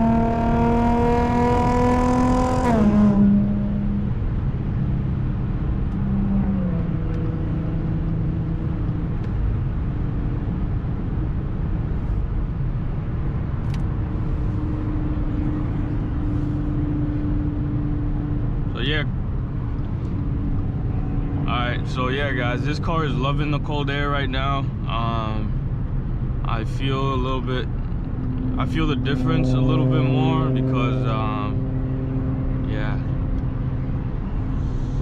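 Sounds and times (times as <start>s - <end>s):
car engine pulling: 0.0s - 9.8s
road noise: 0.0s - 35.0s.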